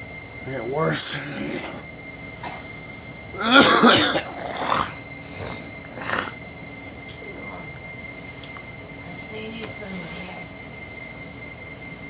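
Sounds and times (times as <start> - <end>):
person coughing: 3.4 - 6.3.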